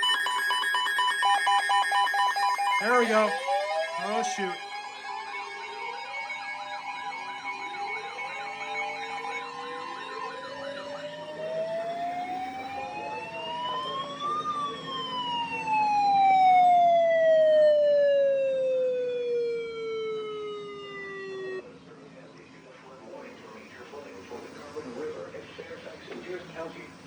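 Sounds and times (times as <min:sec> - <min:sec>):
warbling alert tones: 0:00.0 - 0:04.6
two-tone attention signal: 0:00.0 - 0:09.4
siren winding up and down: 0:00.0 - 0:21.6.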